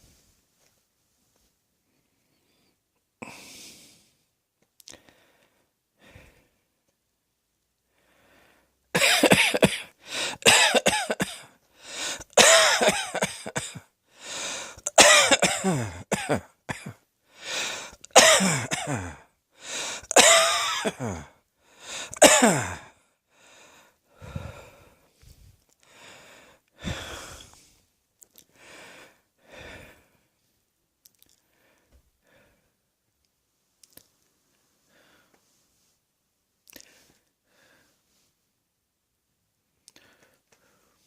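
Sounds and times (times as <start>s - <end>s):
faint breath: 1.9s - 4.3s, 4.9s - 6.7s, 7.9s - 8.8s, 10.0s - 10.4s, 11.7s - 12.3s, 14.1s - 14.8s, 17.3s - 18.0s, 19.5s - 20.1s, 21.6s - 22.2s, 23.3s - 27.9s, 28.5s - 30.4s, 34.8s - 35.9s, 36.8s - 38.4s, 39.9s - 41.0s
person coughing: 9.0s - 11.5s, 12.2s - 13.9s, 14.8s - 17.0s, 18.1s - 19.2s, 20.1s - 21.4s, 22.0s - 22.9s.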